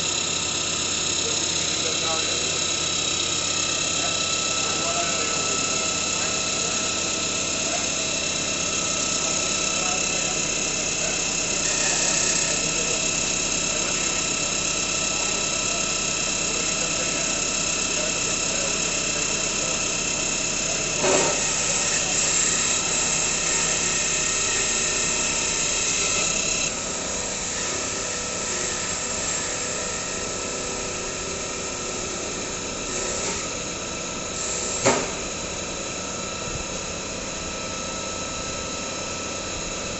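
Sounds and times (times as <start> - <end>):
lathe whining: 0.0 - 39.9.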